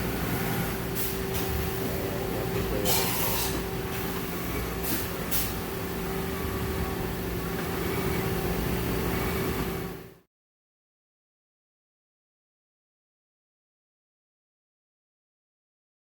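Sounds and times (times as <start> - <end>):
milling machine hum: 0.0 - 10.1.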